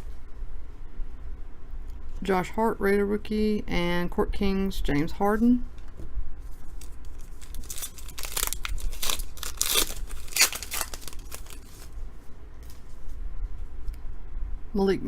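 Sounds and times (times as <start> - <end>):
plastic wrapper tearing and crinkling: 6.6 - 12.0.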